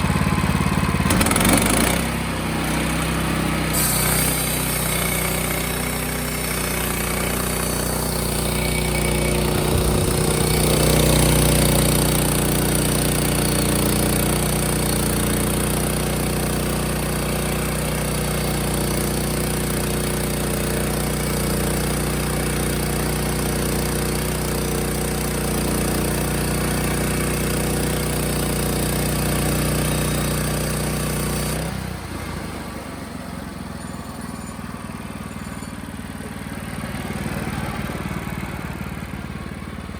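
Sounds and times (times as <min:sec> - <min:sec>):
sawmill engine running: 0:00.0 - 0:39.9
saw blade hissing: 0:01.1 - 0:12.9.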